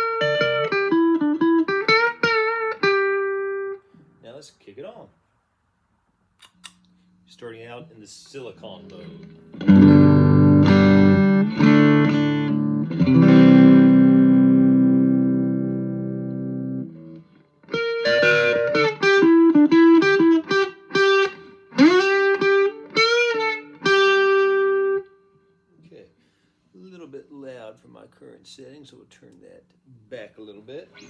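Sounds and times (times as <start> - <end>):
distorted electric guitar chords: 0.0 - 3.7, 9.0 - 25.1
electric guitar lead with bends: 0.0 - 3.8, 9.0 - 25.2.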